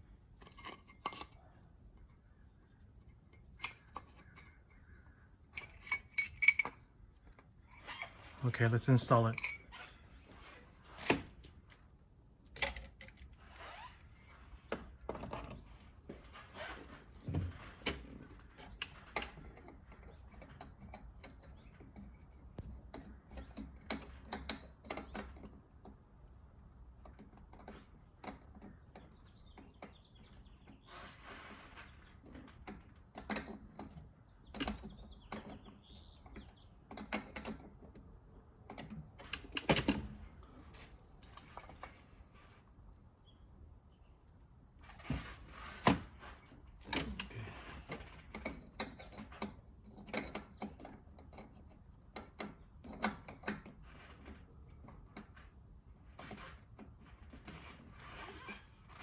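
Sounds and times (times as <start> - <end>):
tools clicking and knocking on parts: 0.4 - 2.1, 3.3 - 4.9, 5.5 - 8.2, 9.1 - 9.8, 12.5 - 13.3, 32.4 - 41.9, 46.8 - 55.4.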